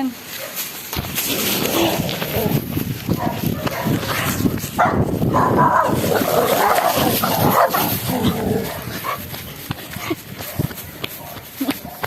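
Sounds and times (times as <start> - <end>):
dogs barking and whimpering: 1.3 - 9.4.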